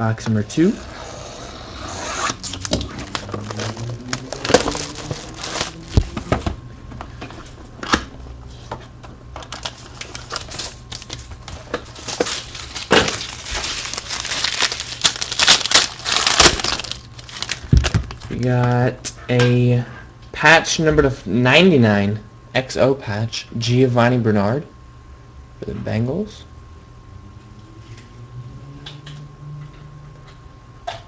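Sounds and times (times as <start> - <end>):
cardboard and plastic crinkling: 2.4 - 6.6, 9.4 - 18.5.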